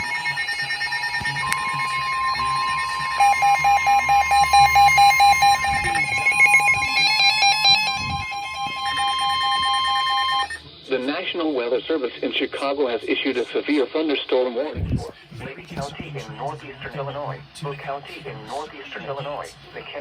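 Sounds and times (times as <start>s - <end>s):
rapid electronic beeping: 0.0s - 10.6s
weather radio alarm tone: 0.0s - 10.6s.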